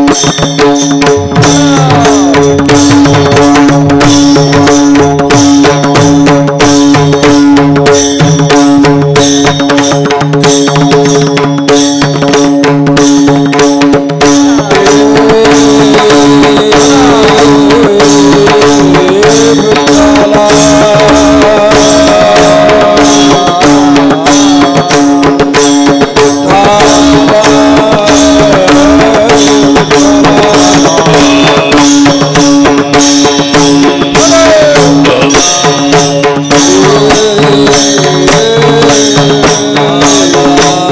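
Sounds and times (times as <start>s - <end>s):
hand-drum strokes: 0.0s - 40.9s.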